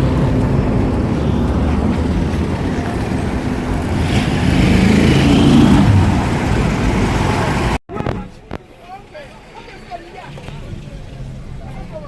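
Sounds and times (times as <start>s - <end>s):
vehicle engine running: 0.0s - 7.8s
road noise: 0.0s - 12.0s.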